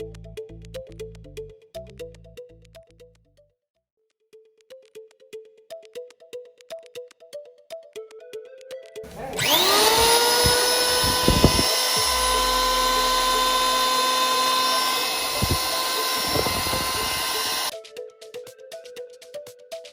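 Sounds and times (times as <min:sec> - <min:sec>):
background music: 0:04.4 - 0:19.9
electric hand planer whining: 0:09.1 - 0:17.7.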